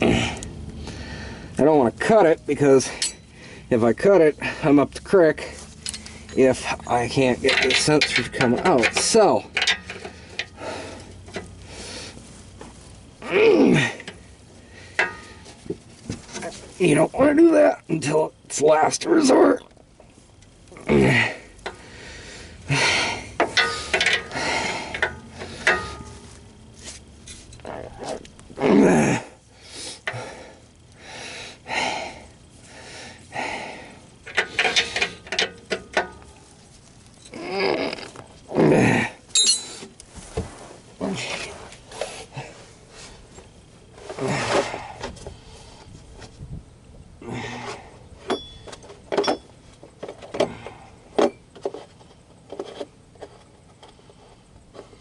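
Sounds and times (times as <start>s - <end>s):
hand tools clinking on metal: 2.1s - 3.4s, 5.4s - 11.5s, 14.9s - 15.6s, 23.3s - 26.3s, 34.2s - 36.4s, 39.3s - 39.9s, 48.2s - 50.5s
ratchet wrench clicking: 23.4s - 26.1s
soft scraping strokes: 25.4s - 28.3s, 40.1s - 44.5s.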